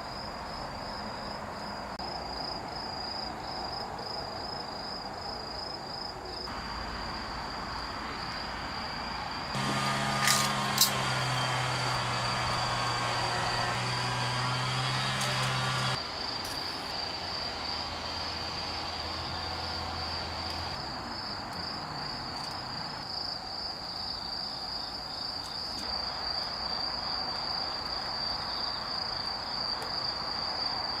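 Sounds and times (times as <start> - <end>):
cricket trilling: 0.0 - 9.6, 10.3 - 31.0
low hum: 8.9 - 16.0.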